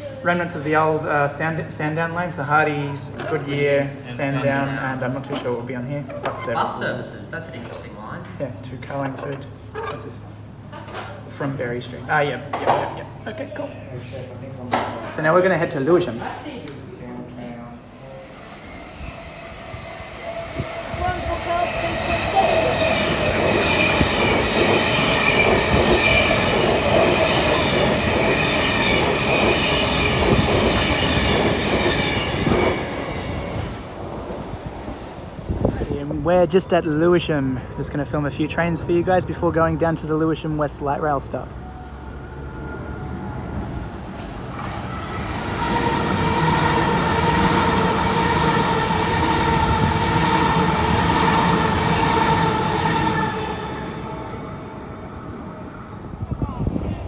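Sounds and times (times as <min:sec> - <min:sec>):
train wheels rumbling: 0:18.2 - 0:57.0.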